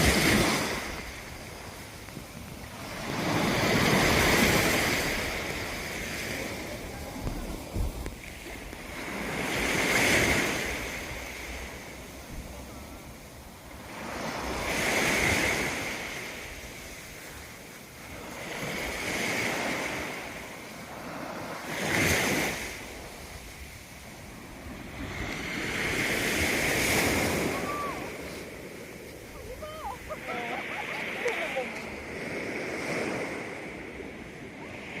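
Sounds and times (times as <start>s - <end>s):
wind on microphone: 0.0s - 13.3s, 20.9s - 35.0s
sea waves washing on shore: 0.0s - 35.0s.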